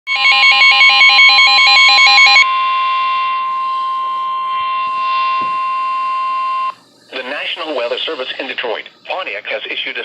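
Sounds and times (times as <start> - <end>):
rapid synthetic beeps: 0.5 - 6.8
steady single tone: 2.4 - 6.8.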